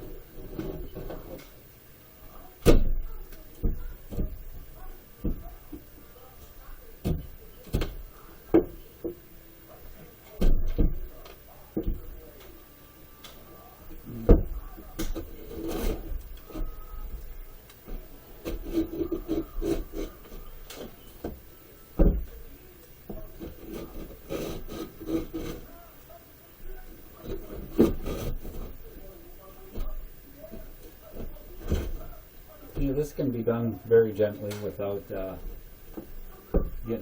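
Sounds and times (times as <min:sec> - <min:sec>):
drywall scraping: 0:00.0 - 0:01.6, 0:13.7 - 0:37.0.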